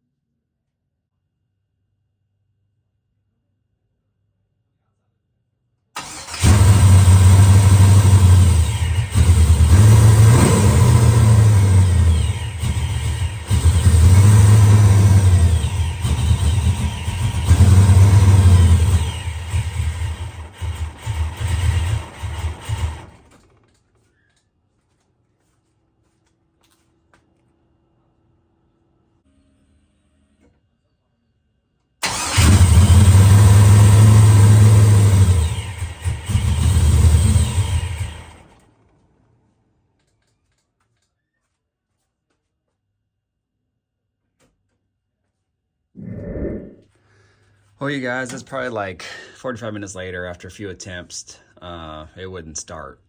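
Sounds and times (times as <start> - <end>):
loud car engine running: 6.0 - 23.4, 32.0 - 39.1
engine cranking: 6.0 - 24.1, 32.0 - 40.6.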